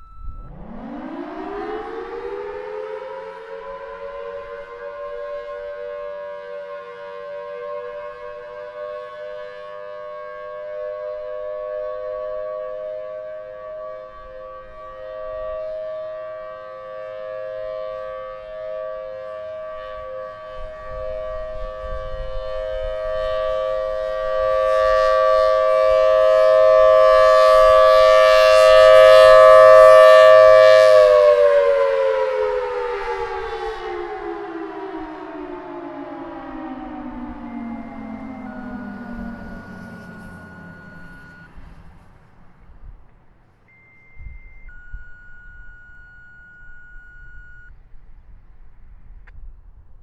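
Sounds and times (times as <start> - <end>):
warning siren steady tone: 0.0 - 47.8.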